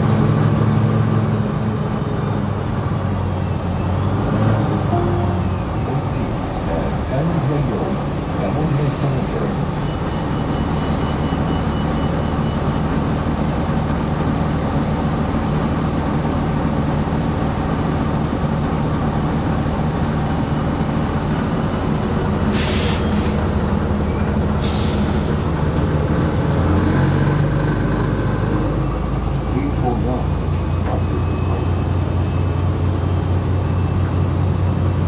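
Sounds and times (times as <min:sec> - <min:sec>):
bus engine running: 0:00.0 - 0:35.0
air brake hisses: 0:22.5 - 0:23.5, 0:24.6 - 0:25.4.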